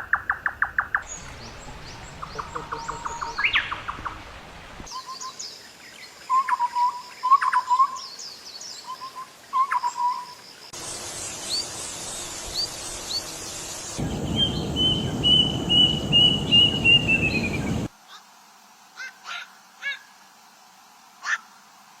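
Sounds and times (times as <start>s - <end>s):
bird calls: 0.0s - 5.4s, 8.8s - 17.9s
steady hiss: 0.9s - 7.2s, 10.3s - 22.0s
rushing noise: 12.4s - 17.9s.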